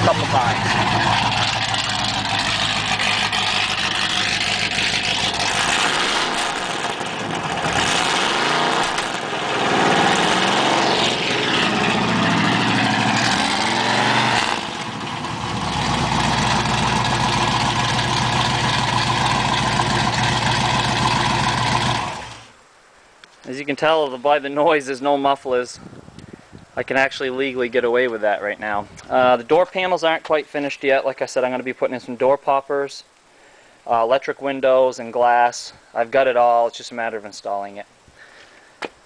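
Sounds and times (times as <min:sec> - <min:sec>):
engine idling and revving: 0:00.0 - 0:22.5.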